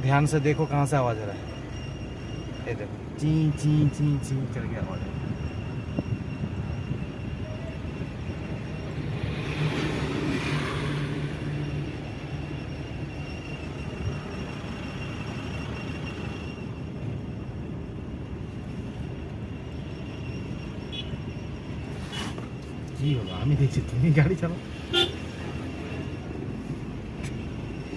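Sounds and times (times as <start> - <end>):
faint high wheel squeal: 0.0 - 27.9
road and tyre rumble: 0.0 - 27.9.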